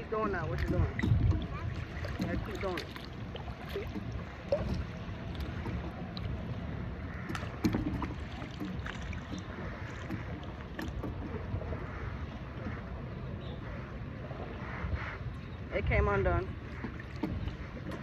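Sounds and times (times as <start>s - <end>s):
low wind rumble on microphone: 0.0s - 18.0s.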